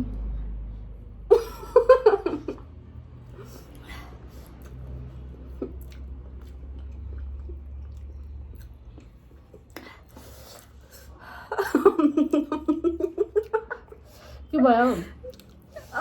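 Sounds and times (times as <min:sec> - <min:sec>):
person chewing food: 0:03.6 - 0:11.0, 0:15.2 - 0:15.9.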